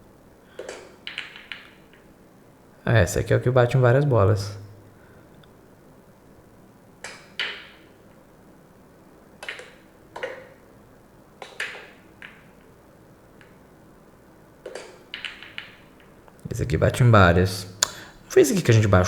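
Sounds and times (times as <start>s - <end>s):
pool balls clacking together: 0.6s - 2.1s, 7.1s - 8.0s, 9.4s - 10.6s, 11.4s - 12.7s.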